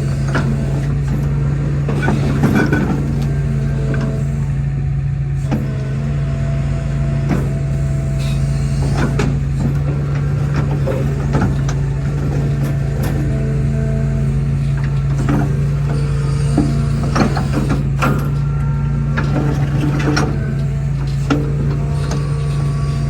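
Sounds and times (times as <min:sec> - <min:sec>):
diesel engine running: 0:00.0 - 0:23.0
metallic knocks and clanks: 0:08.8 - 0:23.0.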